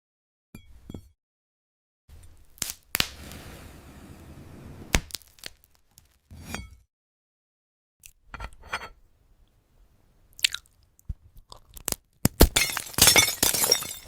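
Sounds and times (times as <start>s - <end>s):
glass crunching: 5.1s - 6.2s, 11.6s - 14.0s
glass cracking: 11.8s - 14.0s.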